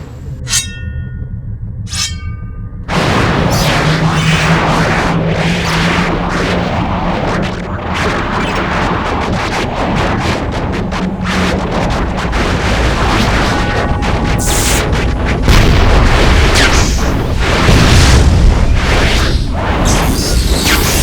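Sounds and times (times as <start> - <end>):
continuous low rumble: 0.0 - 21.0
deep booms: 0.0 - 21.0
ringing tones: 0.4 - 2.9, 13.3 - 16.4
loud hit: 0.4 - 21.0.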